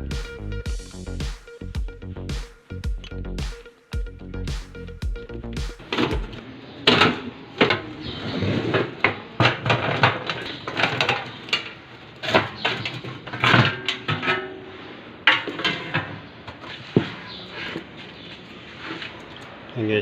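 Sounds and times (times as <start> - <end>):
metal parts clattering: 9.4 - 14.6.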